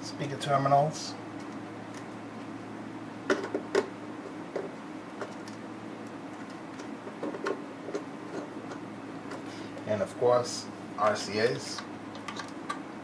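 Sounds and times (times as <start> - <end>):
speaker wires clicking into terminals: 11.4 - 12.8.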